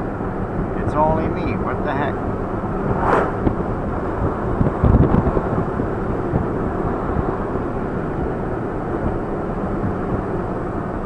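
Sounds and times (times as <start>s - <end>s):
road and engine noise: 0.0s - 11.0s
low thumps: 2.7s - 3.7s.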